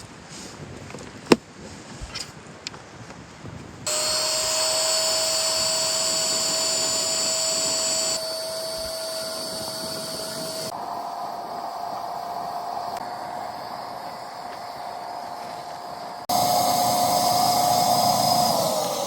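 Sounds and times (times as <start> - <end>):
electric air pump whining: 3.9 - 19.0.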